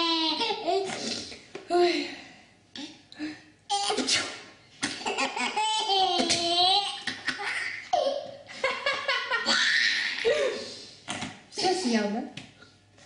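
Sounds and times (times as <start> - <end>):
baby laughing: 0.0 - 1.0, 4.8 - 10.6
sneeze: 3.8 - 4.5.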